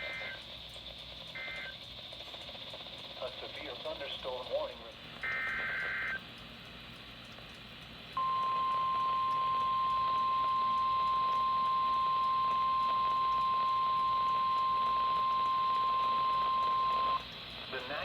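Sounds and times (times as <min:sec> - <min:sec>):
steady alarm tone: 0:00.0 - 0:00.4, 0:01.3 - 0:01.8, 0:05.2 - 0:06.2, 0:08.2 - 0:18.0
radio hiss: 0:03.2 - 0:06.2, 0:14.9 - 0:18.0.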